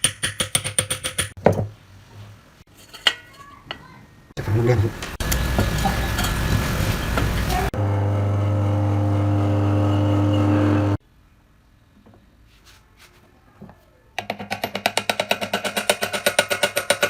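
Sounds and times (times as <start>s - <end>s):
electric motor hum: 6.5s - 11.0s.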